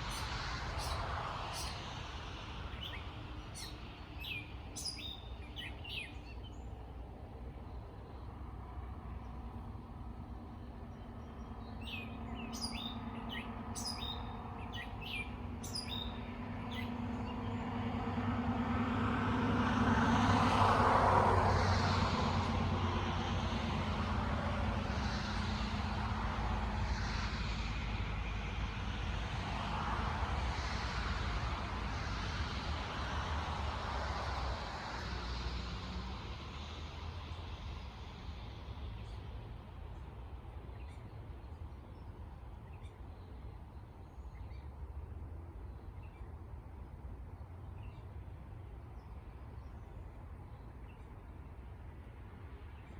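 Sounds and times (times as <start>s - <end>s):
motor vehicle passing: 9.4s - 40.4s
bird chirping: 11.7s - 17.4s.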